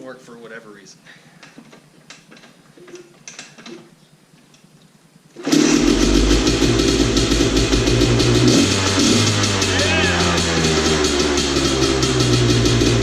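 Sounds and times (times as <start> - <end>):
dirt bike engine running: 5.4 - 13.0.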